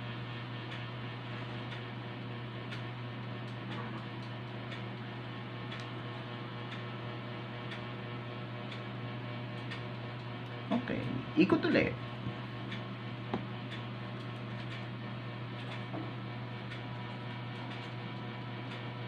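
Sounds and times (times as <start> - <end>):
low electrical hum: 0.0 - 19.0
faint irregular ticks: 5.7 - 5.9.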